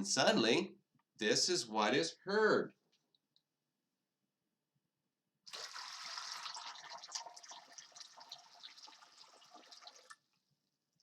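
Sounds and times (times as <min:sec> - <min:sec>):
water pouring into a basin: 0:05.5 - 0:10.8.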